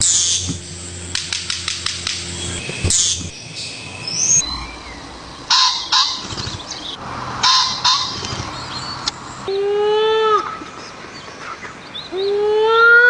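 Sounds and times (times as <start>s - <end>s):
harsh raspy bird calls: 0.0s - 13.0s
honk-like bird call: 5.5s - 6.6s, 7.4s - 8.4s.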